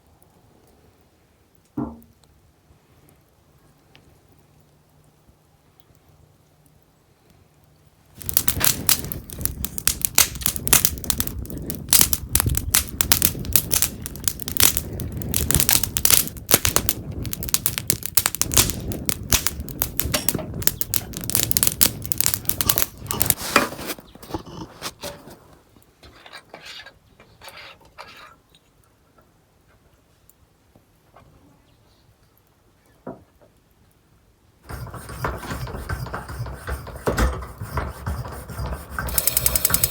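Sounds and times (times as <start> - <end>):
dense crackling and crinkling: 8.1 - 26.9, 34.6 - 39.9.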